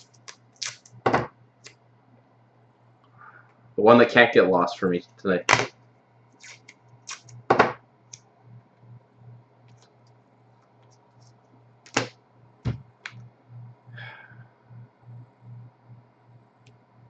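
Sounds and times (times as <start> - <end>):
low pulsing hum: 11.6 - 17.0.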